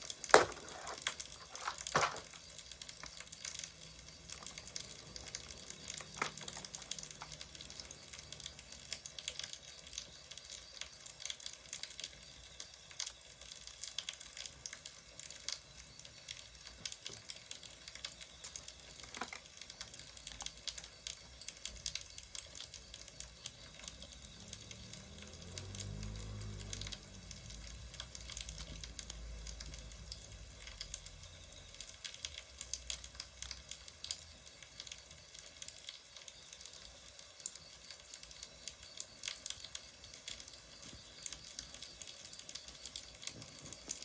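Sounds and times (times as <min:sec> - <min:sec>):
firewood crackling and popping: 0:00.0 - 0:44.0.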